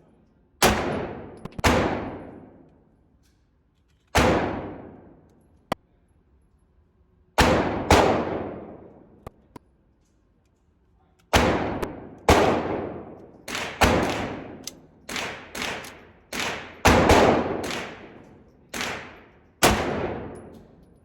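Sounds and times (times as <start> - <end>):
pistol shots with echo: 0.6 - 2.6, 4.2 - 5.2, 7.4 - 9.2, 11.3 - 20.7.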